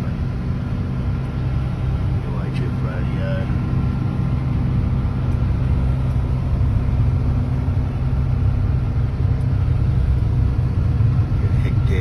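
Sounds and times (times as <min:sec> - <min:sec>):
harvester engine idling: 0:00.0 - 0:12.0.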